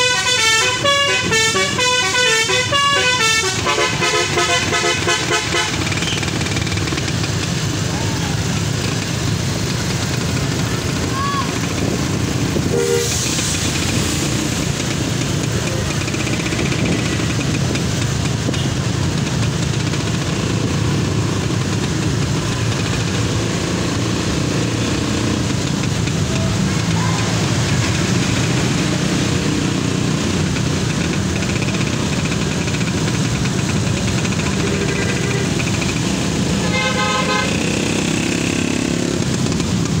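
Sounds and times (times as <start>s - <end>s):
multi-tone bus horn: 0.0s - 6.2s, 12.6s - 13.4s, 34.4s - 35.6s, 36.4s - 38.4s
bus engine and road noise: 0.0s - 40.0s.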